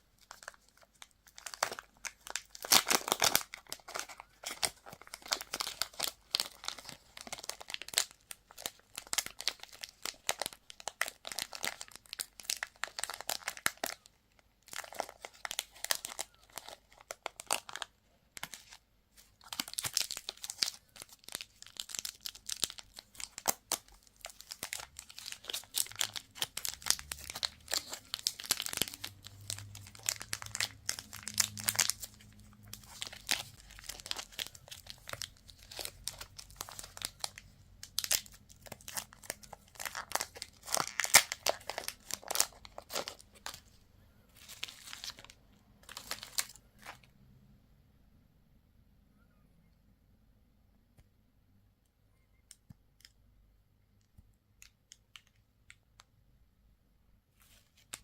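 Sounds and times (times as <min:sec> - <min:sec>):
wrappers crinkling and tearing: 0:00.2 - 0:43.7, 0:44.4 - 0:47.1.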